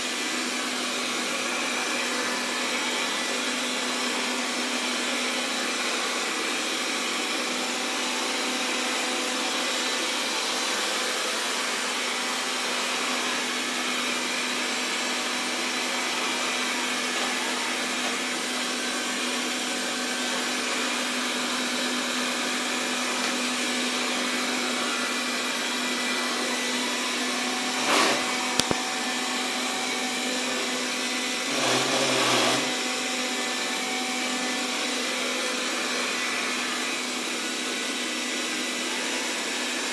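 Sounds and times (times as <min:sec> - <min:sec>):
robot vacuum humming: 0:19.8 - 0:39.7.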